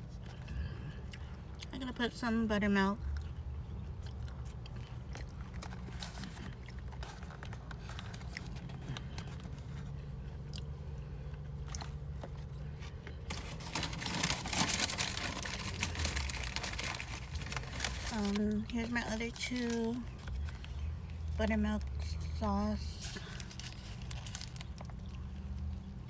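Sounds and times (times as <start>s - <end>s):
chewing: 3.0s - 13.6s
packaging crinkling: 5.3s - 10.2s, 11.5s - 22.0s, 23.0s - 26.0s.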